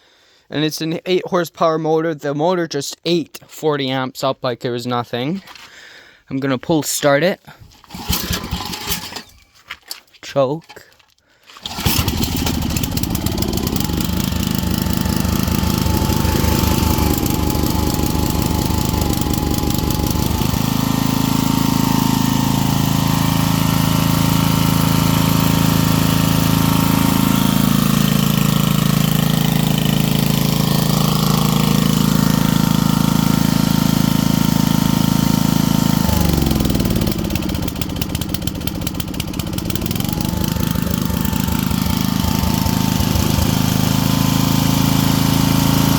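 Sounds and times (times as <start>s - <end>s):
generator engine running: 7.9s - 9.2s, 11.6s - 45.9s.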